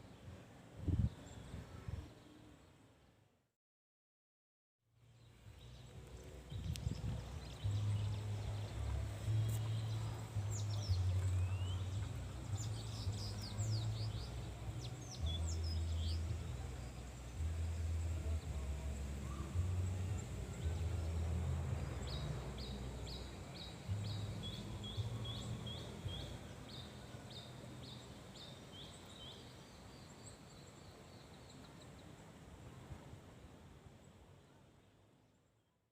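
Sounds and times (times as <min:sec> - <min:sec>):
birds chirping: 0:05.4 - 0:17.4.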